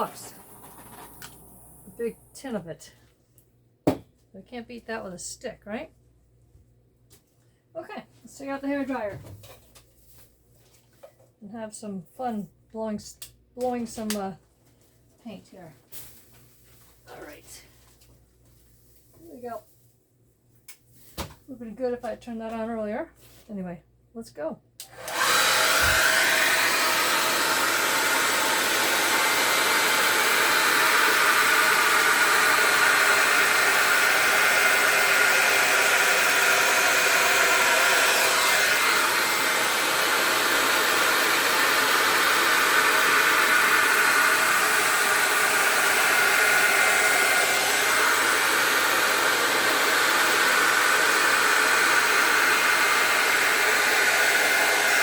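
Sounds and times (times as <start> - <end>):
hair dryer running: 0.0 - 2.3, 24.8 - 55.0.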